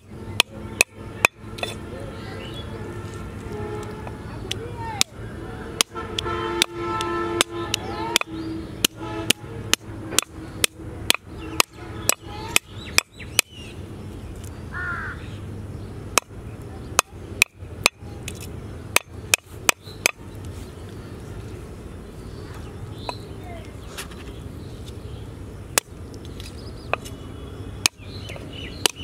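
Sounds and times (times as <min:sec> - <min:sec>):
bird calling: 0:14.5 - 0:15.4, 0:22.2 - 0:25.3.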